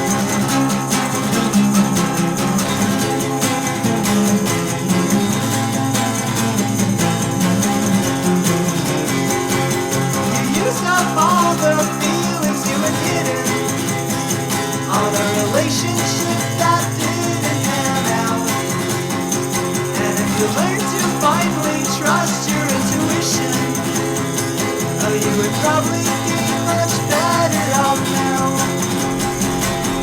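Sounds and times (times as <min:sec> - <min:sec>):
guitar: 0:00.0 - 0:30.0
person singing: 0:10.4 - 0:14.1, 0:14.8 - 0:18.8, 0:20.0 - 0:24.2, 0:25.0 - 0:30.0.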